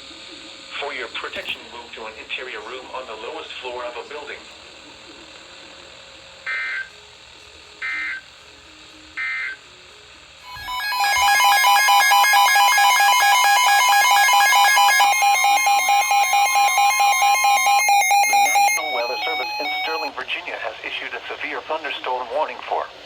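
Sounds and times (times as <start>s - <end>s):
buzzing data bursts: 10.5s - 20.1s
warbling electronic alert tone: 10.5s - 20.1s.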